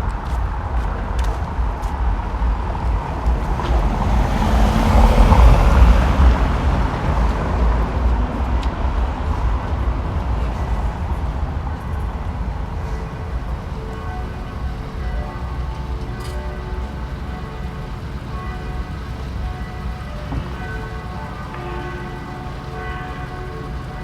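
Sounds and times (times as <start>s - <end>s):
car passing by: 0.0s - 23.0s
low street rumble: 0.0s - 24.0s.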